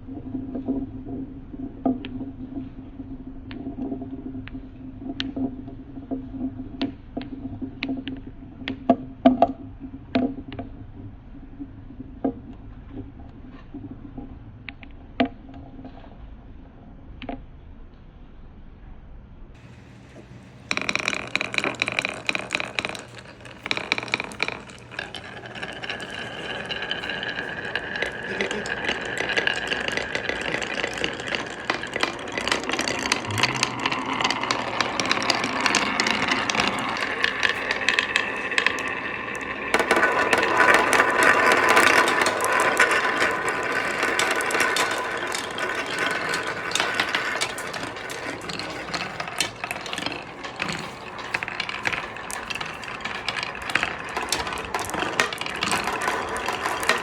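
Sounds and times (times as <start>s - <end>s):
balls rattling on marble run: 19.6s - 57.0s
rolling rumble with ringing tone: 19.6s - 57.0s.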